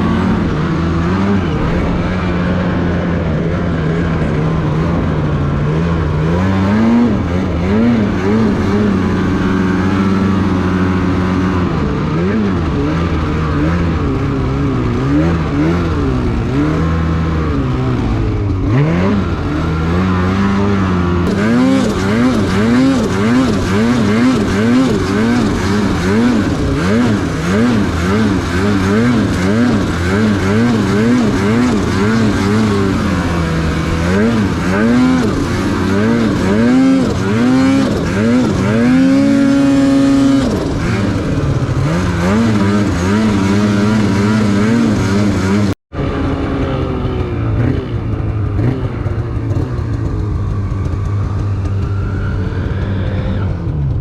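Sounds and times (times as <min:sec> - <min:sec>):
snowmobile engine revving: 0:00.0 - 0:54.0.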